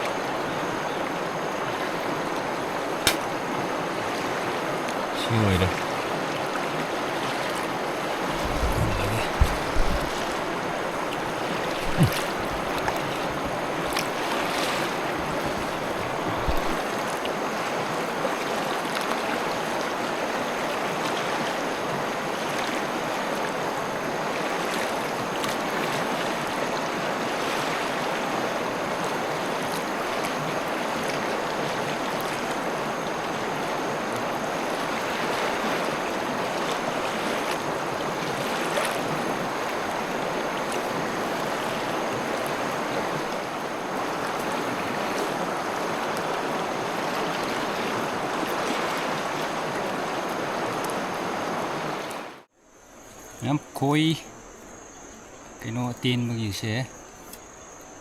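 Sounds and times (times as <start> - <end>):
river rushing over stones: 0.0 - 52.5
light knocks: 8.2 - 16.8.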